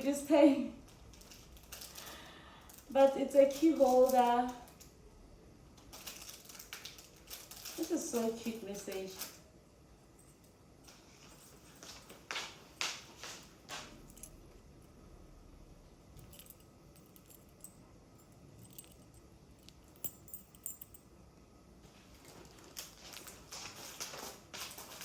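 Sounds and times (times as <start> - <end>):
metal trinkets clicking and jingling: 0.9 - 4.9, 5.9 - 9.4, 10.1 - 12.4, 13.9 - 15.0, 16.1 - 21.1.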